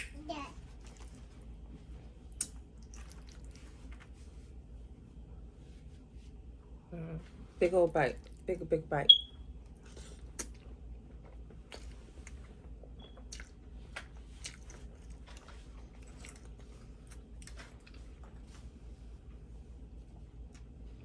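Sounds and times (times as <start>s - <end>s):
person chewing spaghetti: 0.6s - 4.2s, 9.6s - 18.8s
wet mouth clicks and smacks: 2.3s - 3.5s, 10.3s - 10.7s, 13.0s - 16.5s.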